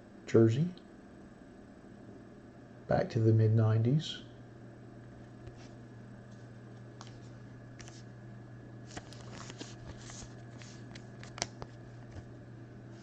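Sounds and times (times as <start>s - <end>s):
steady low hum: 0.0s - 13.0s
cards rustling and clicking: 8.8s - 12.3s.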